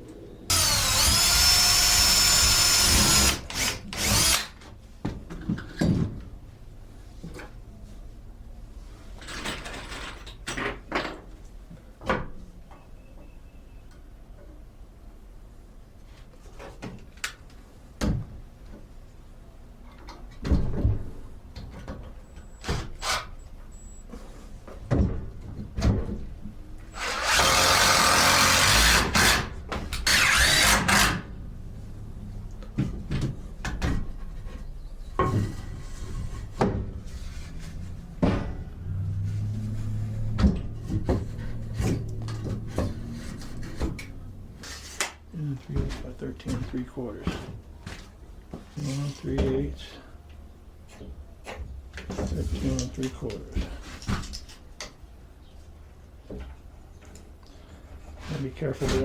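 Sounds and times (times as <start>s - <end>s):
wooden parts and tools clattering: 9.1s - 11.3s, 32.7s - 45.1s.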